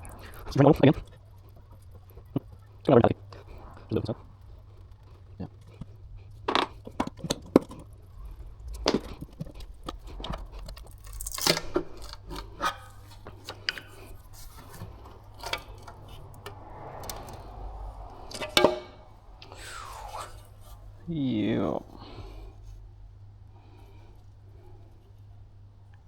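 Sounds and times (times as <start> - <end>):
sealant tearing loose: 8.9 - 16.4
tools scraping metal: 8.9 - 21.1.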